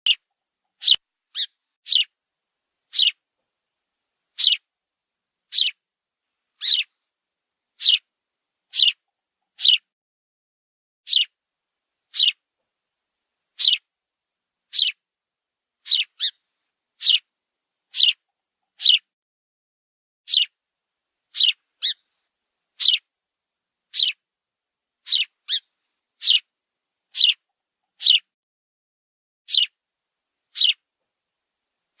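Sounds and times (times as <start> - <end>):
sparrow chicks chirping: 0.8 - 2.1, 2.9 - 3.2, 4.3 - 4.7, 5.5 - 5.8, 6.6 - 7.0, 7.8 - 8.1, 8.7 - 9.9, 11.1 - 11.4, 12.1 - 12.4, 13.6 - 13.9, 14.7 - 15.0, 15.8 - 16.4, 17.0 - 17.3, 17.9 - 19.1, 20.3 - 20.6, 21.3 - 22.2, 22.8 - 23.1, 23.9 - 24.2, 25.0 - 26.5, 27.1 - 28.3, 29.5 - 29.8, 30.5 - 30.8.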